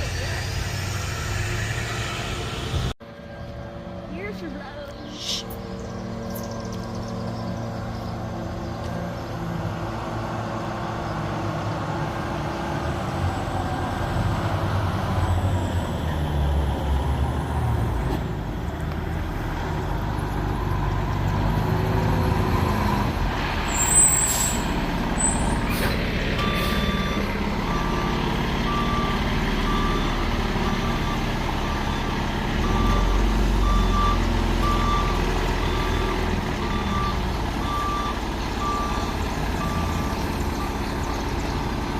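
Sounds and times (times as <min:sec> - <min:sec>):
fire truck engine running: 0:18.3 - 0:41.9
back-up alarm beeping: 0:26.4 - 0:40.1.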